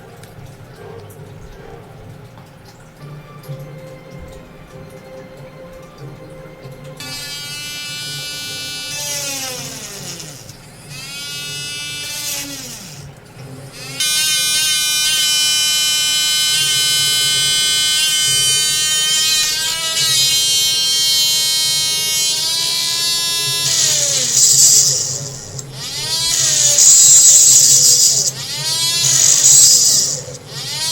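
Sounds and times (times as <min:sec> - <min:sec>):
mini electric drill motor whining: 0:07.0 - 0:13.1, 0:13.8 - 0:30.9.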